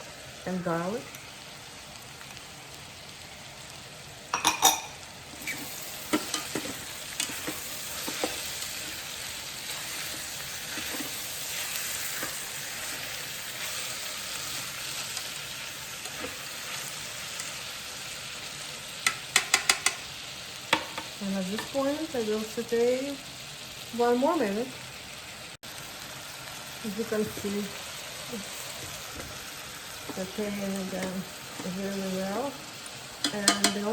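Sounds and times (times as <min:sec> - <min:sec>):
vegetables sizzling in oil: 0:00.0 - 0:33.9
utensil scraping a pot: 0:04.4 - 0:15.3.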